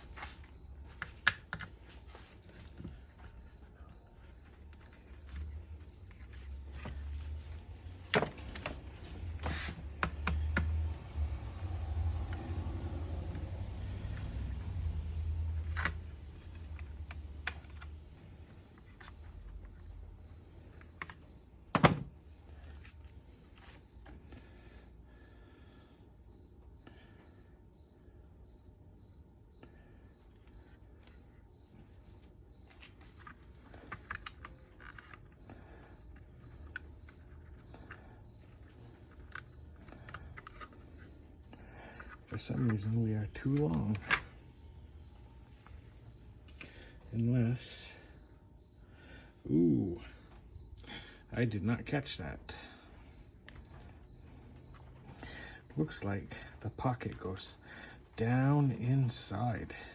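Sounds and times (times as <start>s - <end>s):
low steady hum: 0.0s - 59.9s
plastic parts clicking: 32.8s - 41.1s.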